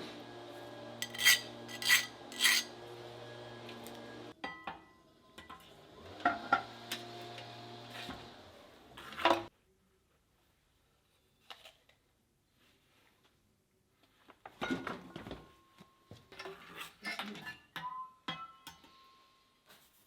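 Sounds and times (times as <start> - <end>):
metallic clinks and scrapes: 1.0 - 2.7.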